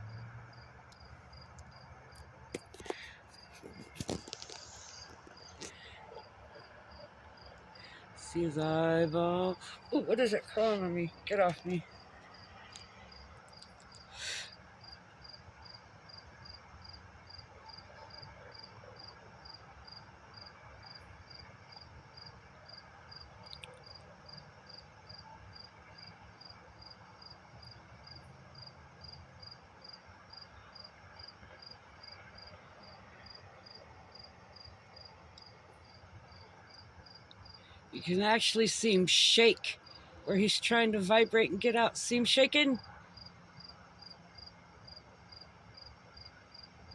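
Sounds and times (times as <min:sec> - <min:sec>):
cricket chirping: 0:00.0 - 0:41.6, 0:42.2 - 0:46.9
faint low hum: 0:00.0 - 0:46.9
brief rustle: 0:02.5 - 0:05.8.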